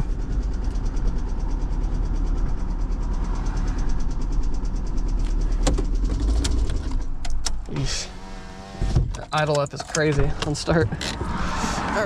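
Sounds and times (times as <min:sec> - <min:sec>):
engine idling with knocking: 0:00.0 - 0:07.9
sharp clicks: 0:06.4 - 0:07.8.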